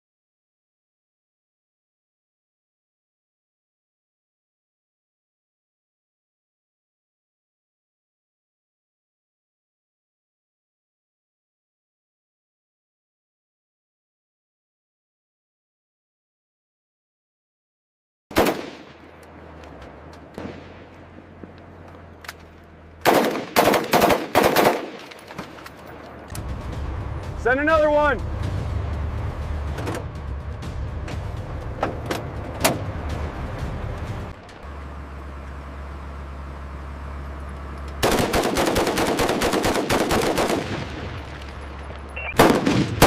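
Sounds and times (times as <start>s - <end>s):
machine gun firing: 18.3s - 19.0s, 23.0s - 25.2s, 38.0s - 41.1s, 42.4s - 43.0s.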